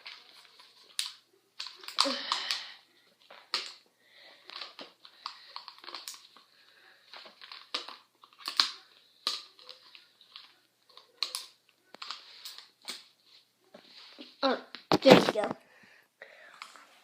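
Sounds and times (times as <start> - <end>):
headphones being handled: 0.0 - 15.6, 16.5 - 17.0.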